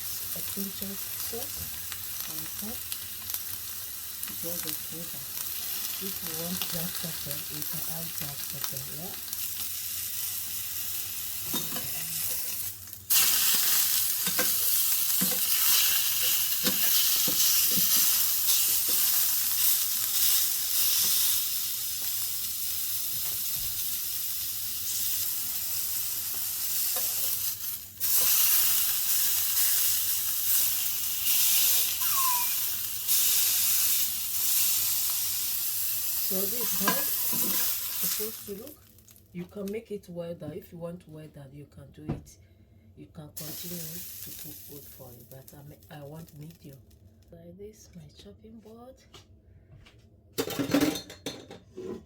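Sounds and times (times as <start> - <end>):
steak sizzling in pan: 0.0 - 39.2, 43.5 - 45.2.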